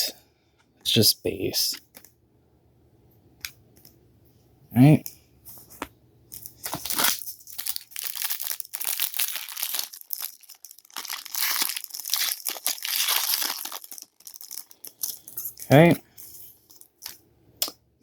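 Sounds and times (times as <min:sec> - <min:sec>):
plastic wrapper crinkling and tearing: 0:06.3 - 0:17.2.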